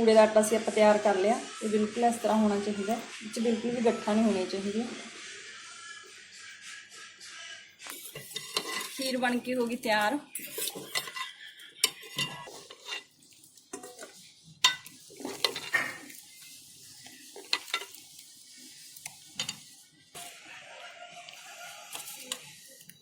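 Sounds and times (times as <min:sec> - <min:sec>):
metal ladle stirring pot: 0:07.9 - 0:20.4, 0:21.3 - 0:23.0.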